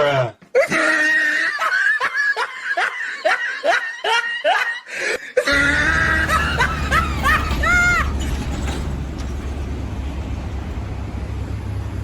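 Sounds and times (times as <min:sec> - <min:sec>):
steady low drone: 0:05.5 - 0:12.0.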